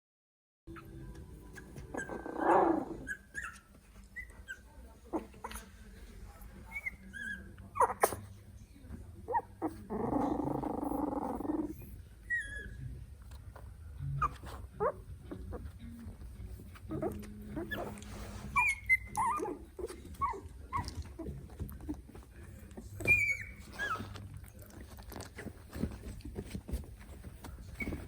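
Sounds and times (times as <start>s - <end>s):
puppies squeaking and whimpering: 0.7s - 5.7s, 6.7s - 8.3s, 9.3s - 12.8s, 14.1s - 28.0s
puppy growling: 1.6s - 3.6s, 9.2s - 12.8s, 14.1s - 15.8s, 16.6s - 28.0s.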